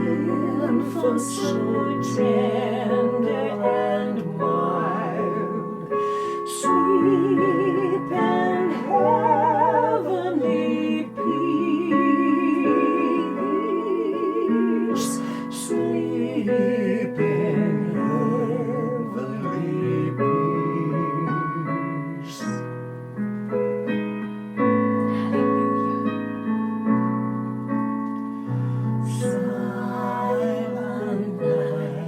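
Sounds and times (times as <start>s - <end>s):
person singing with vibrato: 0.0s - 22.7s
slow piano accompaniment: 0.0s - 32.0s.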